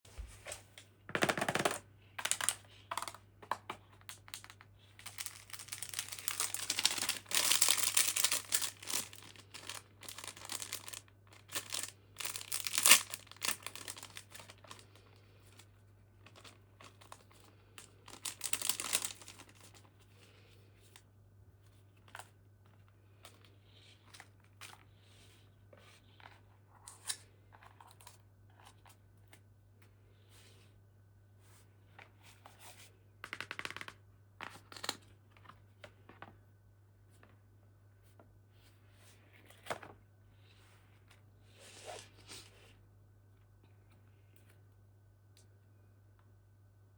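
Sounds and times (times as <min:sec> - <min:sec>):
packaging tearing and crinkling: 0:04.4 - 0:14.8, 0:18.1 - 0:19.7.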